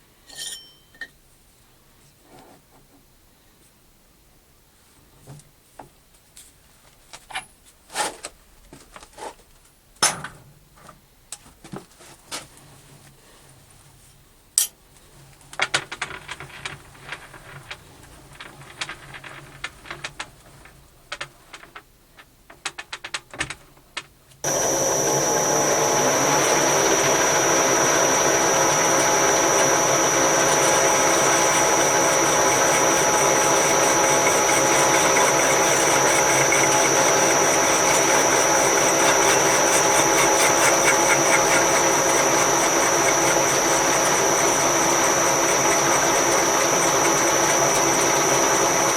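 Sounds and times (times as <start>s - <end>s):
high whine: 24.4s - 48.9s
metal lathe running: 24.4s - 48.9s.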